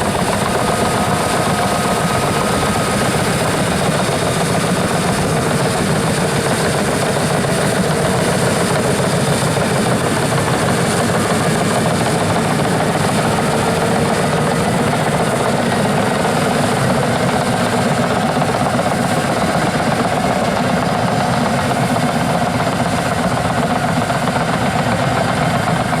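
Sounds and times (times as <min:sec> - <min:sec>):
bulldozer diesel engine under load: 0:00.0 - 0:26.0.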